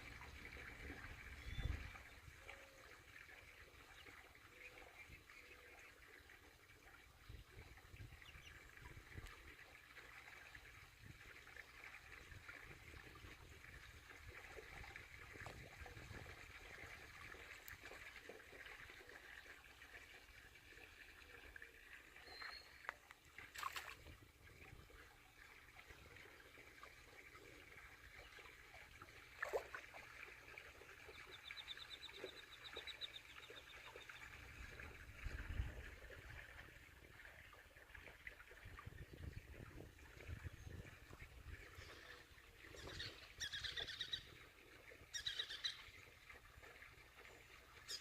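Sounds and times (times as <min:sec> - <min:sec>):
faint trickling water: 0:00.0 - 0:48.0.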